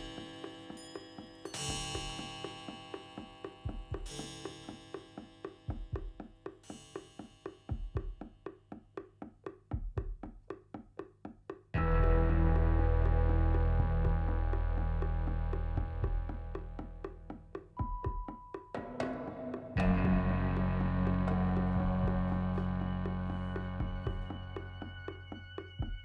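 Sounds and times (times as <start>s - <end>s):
bell-like struck chords: 0.0s - 6.0s.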